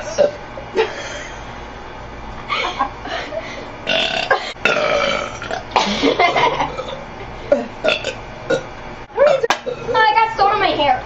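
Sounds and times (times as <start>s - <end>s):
woman belching: 3.9s - 5.9s, 6.6s - 10.0s.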